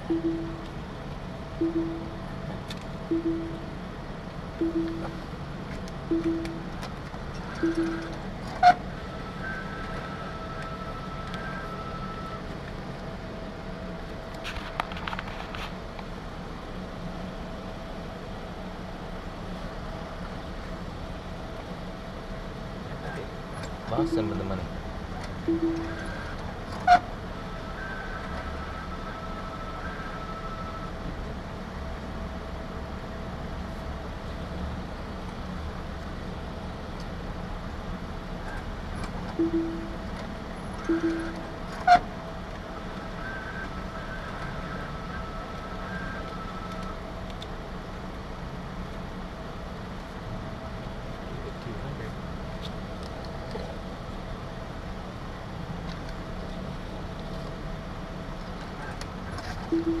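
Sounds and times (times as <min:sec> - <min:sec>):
higher whine: 0:00.0 - 0:13.9, 0:23.9 - 0:27.6, 0:39.3 - 0:47.0, 0:59.7 - 1:00.0
faint steady hum: 0:00.0 - 1:00.0
faint steady whine: 0:00.0 - 1:00.0
low mechanical rumble: 0:00.0 - 1:00.0.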